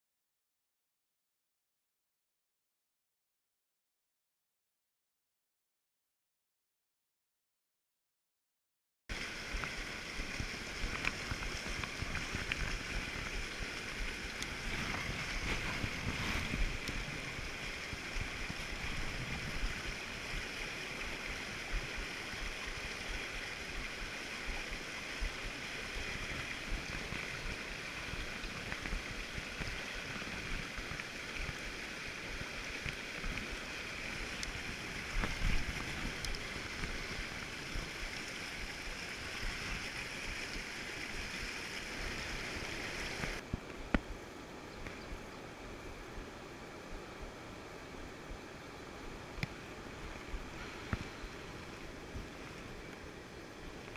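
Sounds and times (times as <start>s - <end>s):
rushing water: 9.1s - 53.9s.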